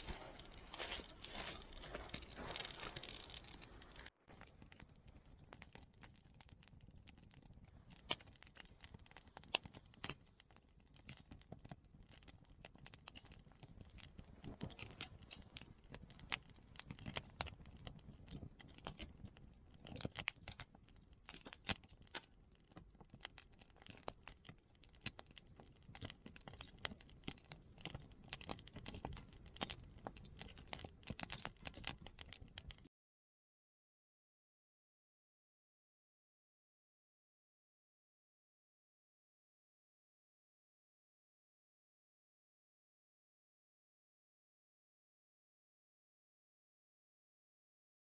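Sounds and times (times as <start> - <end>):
small wood fire crackling: 0.0 - 32.9.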